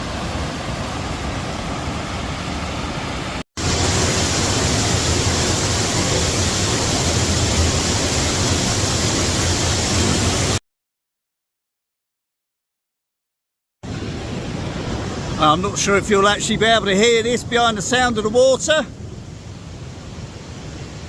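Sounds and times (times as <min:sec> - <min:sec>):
falling water rushing: 0:00.0 - 0:10.6, 0:13.8 - 0:21.0.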